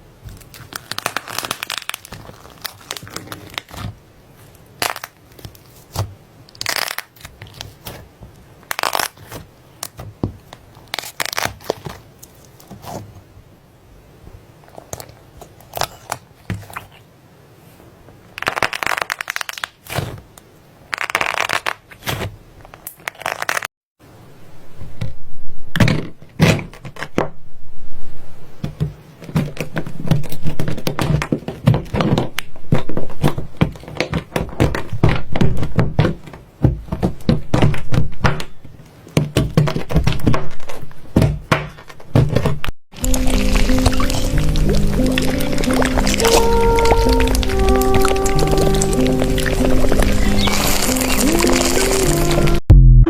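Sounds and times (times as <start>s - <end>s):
slime crackling and popping: 0.3s - 8.0s, 8.6s - 13.0s, 18.4s - 20.0s, 20.9s - 23.7s, 43.0s - 52.2s.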